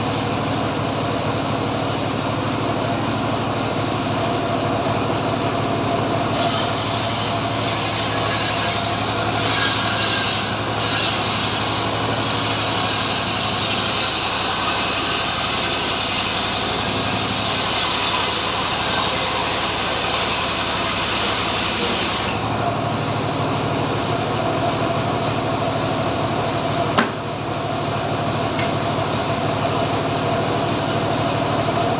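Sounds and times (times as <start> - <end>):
engine running: 0.0 - 31.9
saw cutting wood hiss: 6.3 - 22.5.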